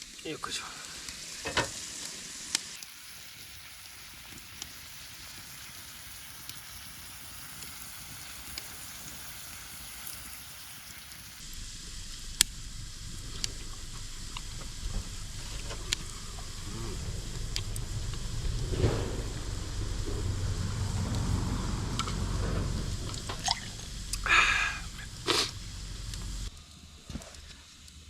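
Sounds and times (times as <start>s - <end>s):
meat sizzling on a griddle: 0.0s - 26.6s
low rumble: 11.3s - 26.5s.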